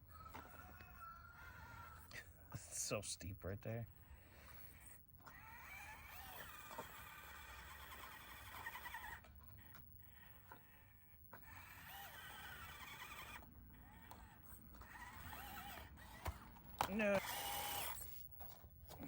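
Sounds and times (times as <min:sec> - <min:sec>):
electric motor whining: 0:04.1 - 0:19.0.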